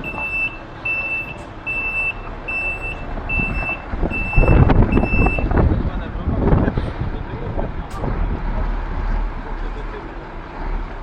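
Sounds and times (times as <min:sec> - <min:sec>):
reversing alarm beeping: 0:00.0 - 0:05.5
truck engine running: 0:00.0 - 0:11.0.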